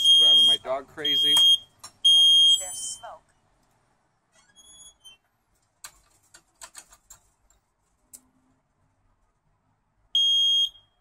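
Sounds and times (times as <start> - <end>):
smoke alarm beep: 0.0 - 3.2, 10.2 - 11.0.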